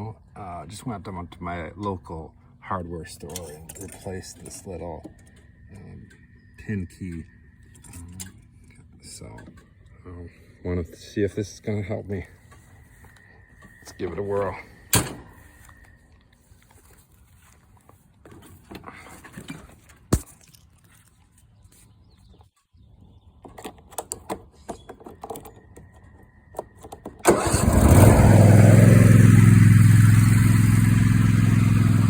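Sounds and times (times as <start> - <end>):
mower engine starting and running: 27.2 - 32.0.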